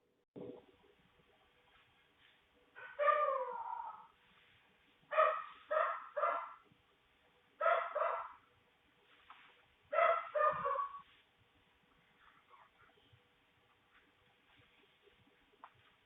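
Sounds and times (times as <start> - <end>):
dog barking: 2.8 - 3.8, 5.1 - 6.6, 7.6 - 8.4, 9.9 - 11.1.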